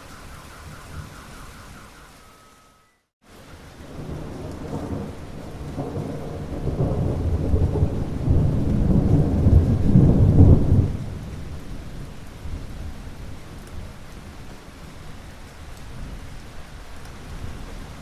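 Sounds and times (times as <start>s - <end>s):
steady rain: 0.0s - 18.0s
rolling thunder: 3.7s - 13.2s.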